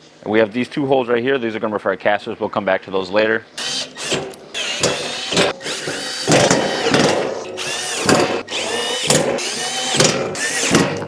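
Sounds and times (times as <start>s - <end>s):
power drill driving screws into metal: 3.6s - 11.0s.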